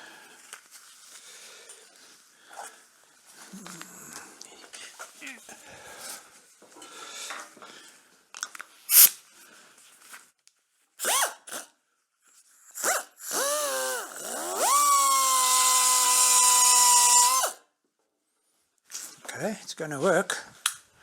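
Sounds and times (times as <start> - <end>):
electric power tool whining: 12.8 - 17.6.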